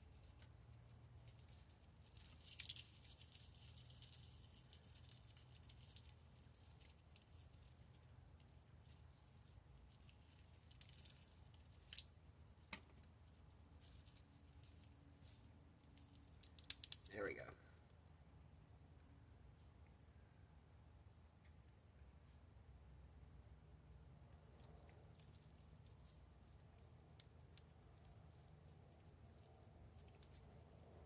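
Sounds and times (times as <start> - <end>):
pinecone pieces rustling and clicking: 0.1 - 12.1, 13.6 - 17.2, 24.6 - 31.0.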